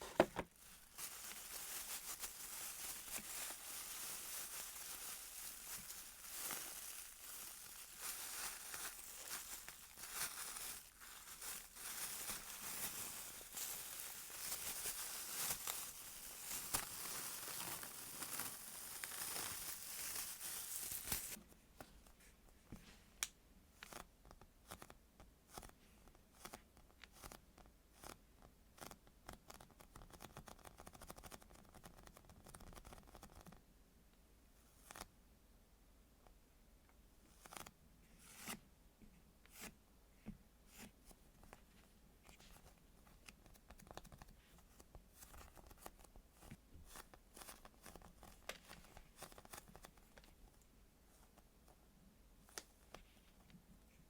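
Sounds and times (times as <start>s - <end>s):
crinkling of squishy toys: 0.0s - 22.3s, 40.8s - 50.6s.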